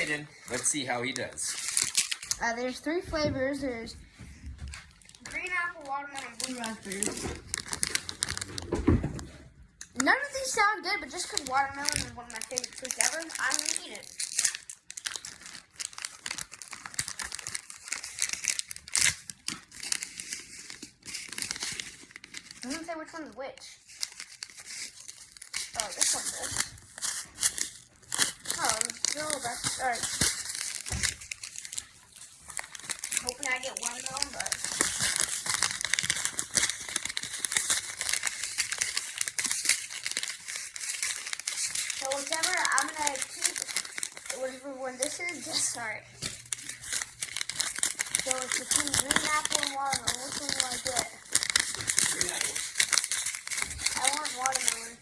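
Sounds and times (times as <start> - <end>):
candy packet crinkling: 0.0 - 4.0, 4.6 - 55.0.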